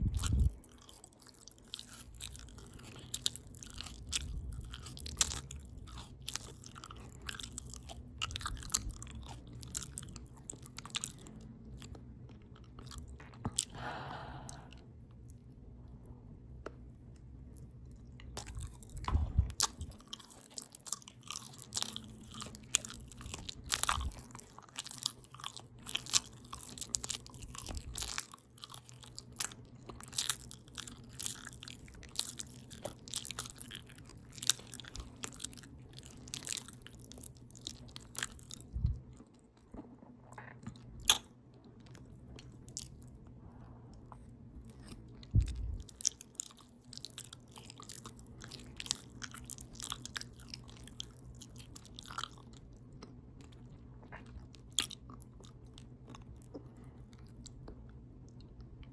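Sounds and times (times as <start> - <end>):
open-mouth chewing clicks: 0.0 - 13.7.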